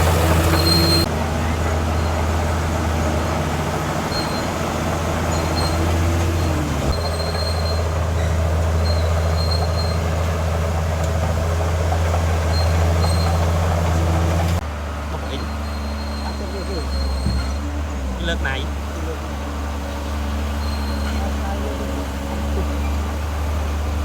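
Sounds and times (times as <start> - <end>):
heavy diesel machinery running: 0.0 - 24.0
faint high squeaks: 0.1 - 1.1, 15.3 - 17.8, 20.5 - 23.2.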